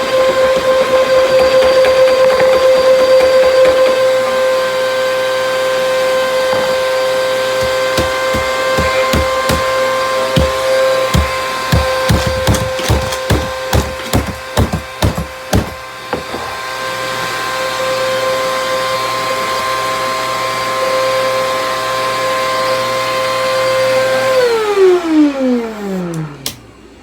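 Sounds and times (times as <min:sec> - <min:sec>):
vacuum cleaner motor whining: 0:00.0 - 0:27.0
screws rattling through vacuum: 0:10.3 - 0:15.7.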